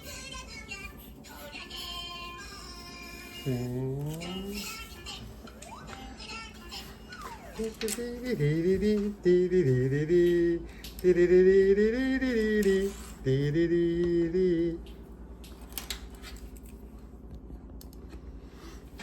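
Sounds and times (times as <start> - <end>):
person singing: 0.0 - 14.9.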